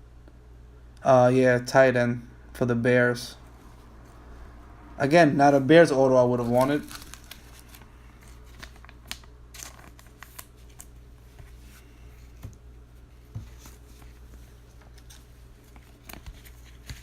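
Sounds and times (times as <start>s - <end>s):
steady low hum: 0.0s - 17.0s
trading cards clicking and rustling: 6.4s - 11.6s.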